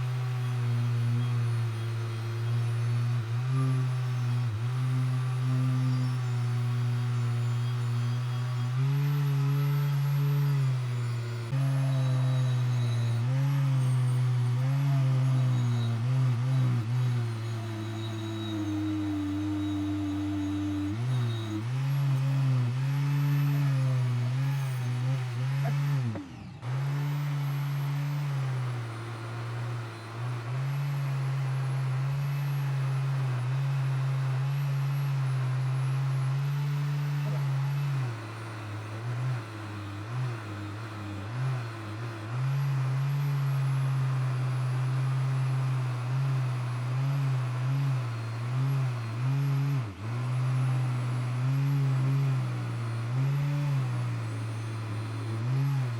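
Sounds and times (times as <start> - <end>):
electric air pump humming: 0.0 - 30.6.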